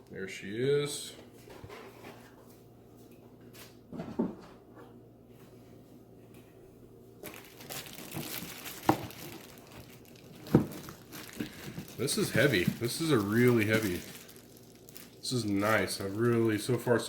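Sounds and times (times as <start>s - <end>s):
packaging crinkling and rustling: 7.2s - 17.0s.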